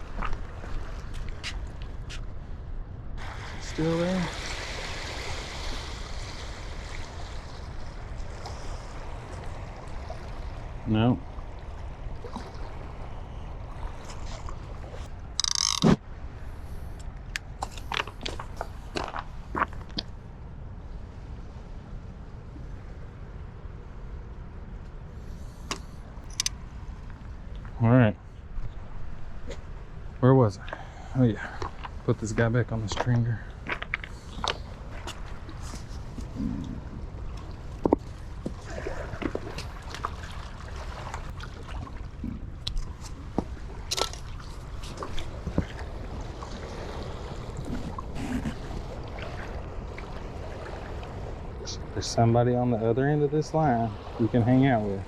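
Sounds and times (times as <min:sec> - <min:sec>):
low outdoor rumble: 0:00.0 - 0:55.0
water sloshing and dripping: 0:03.2 - 0:15.9, 0:28.6 - 0:51.8.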